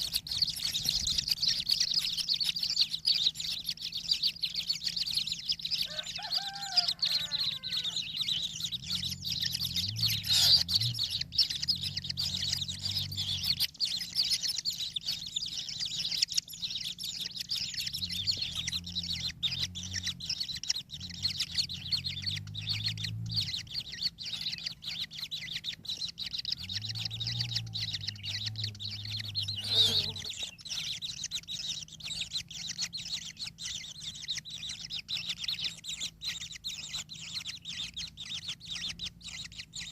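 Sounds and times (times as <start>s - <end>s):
short falling bird calls: 0.0s - 15.8s, 16.8s - 32.4s
birds chirring chorus: 0.0s - 39.9s.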